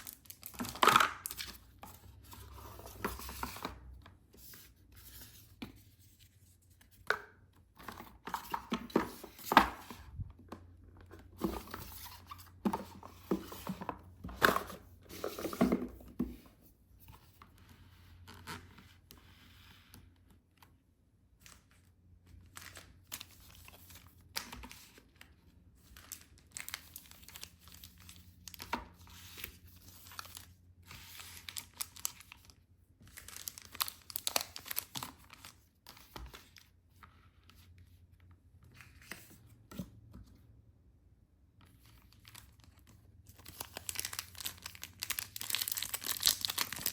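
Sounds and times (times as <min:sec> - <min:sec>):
packaging tearing and crinkling: 0:43.5 - 0:46.9.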